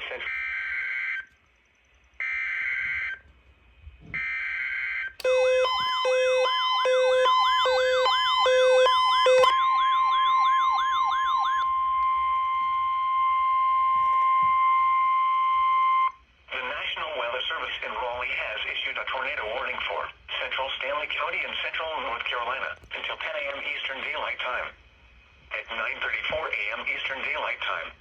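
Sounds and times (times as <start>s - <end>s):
warbling electronic siren alert: 4.2s - 16.1s
steady alarm tone: 4.2s - 16.2s.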